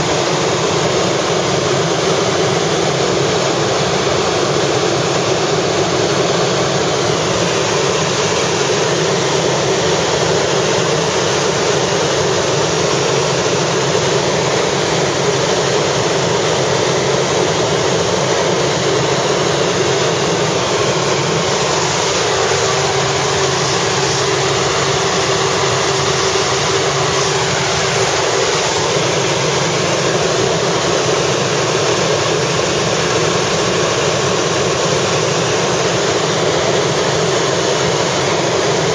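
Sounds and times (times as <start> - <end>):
helicopter engine and rotor noise: 0.0 - 38.9.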